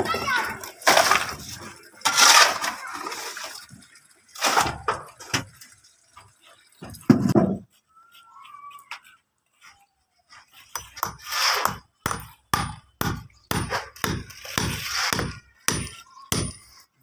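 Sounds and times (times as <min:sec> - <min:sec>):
rough scraping: 0:00.8 - 0:03.4, 0:11.2 - 0:11.8, 0:13.7 - 0:15.3.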